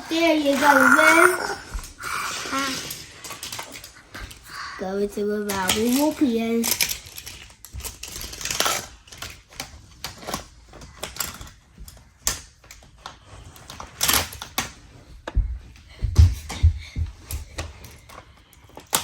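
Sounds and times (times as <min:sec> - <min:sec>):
toy cars clicking on plastic: 0:00.1 - 0:14.8, 0:17.3 - 0:19.0.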